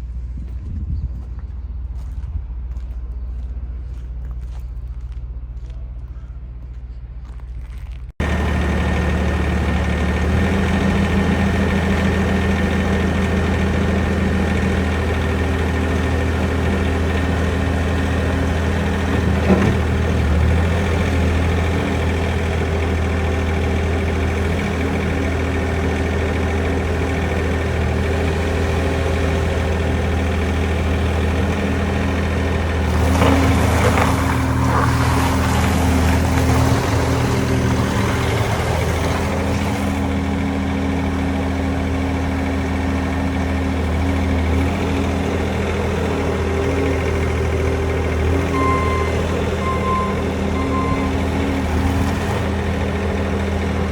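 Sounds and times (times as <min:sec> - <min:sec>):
diesel engine running: 0:00.0 - 0:53.9
clatter: 0:29.4 - 0:40.4.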